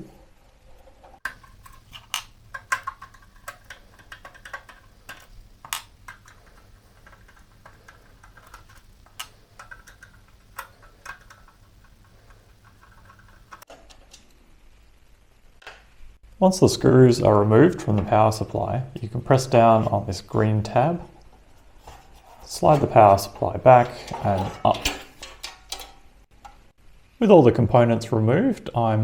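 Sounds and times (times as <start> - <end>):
screwdriver clicking on metal screws: 1.3 - 13.6.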